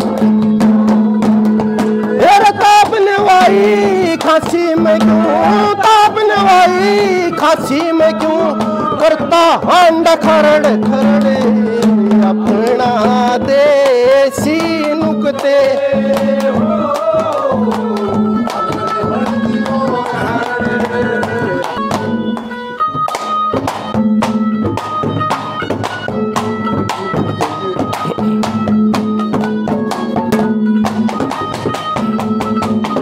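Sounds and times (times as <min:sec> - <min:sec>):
person singing: 0:00.0 - 0:22.2, 0:26.7 - 0:28.8
hand drum fast beat: 0:00.0 - 0:33.0.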